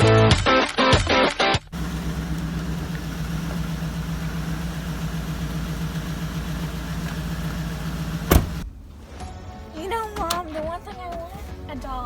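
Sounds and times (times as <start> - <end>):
car engine idling: 1.8 - 9.0.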